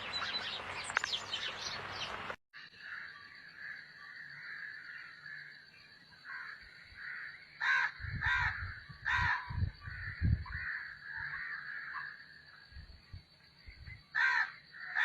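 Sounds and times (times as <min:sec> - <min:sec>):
crow cawing: 0:02.8 - 0:05.6, 0:06.2 - 0:12.2, 0:14.2 - 0:15.0.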